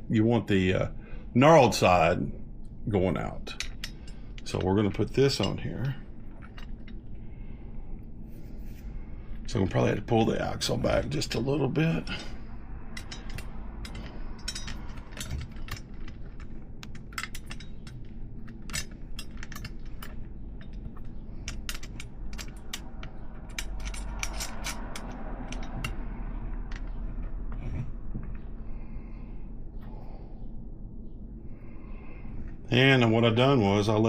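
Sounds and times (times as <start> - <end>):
low steady hum: 0.0 - 34.0
small metallic clicks: 12.9 - 27.1.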